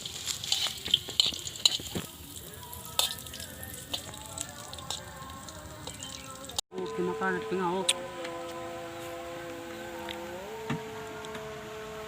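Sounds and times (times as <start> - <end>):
oil sizzling in a pan: 0.0 - 6.6
oil popping: 0.0 - 6.8.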